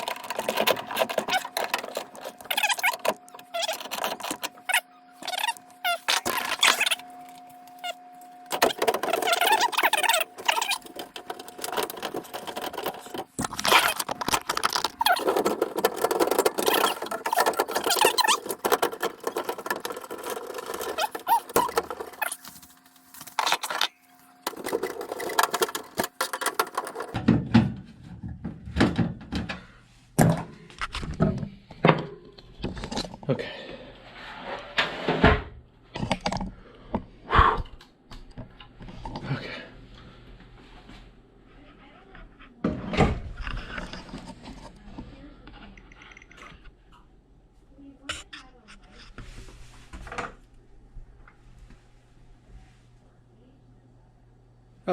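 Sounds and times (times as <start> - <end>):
metal parts clattering: 0.0 - 5.5, 8.5 - 22.5, 23.2 - 27.2
faint steady hum: 0.0 - 54.9.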